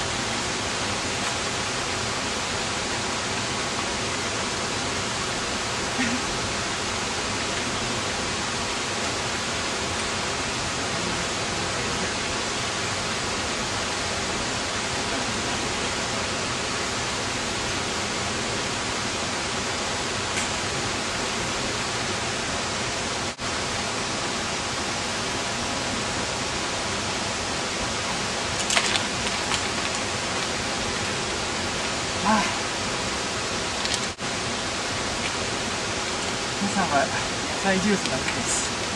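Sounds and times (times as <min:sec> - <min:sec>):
waterfall pouring: 0:24.8 - 0:38.9.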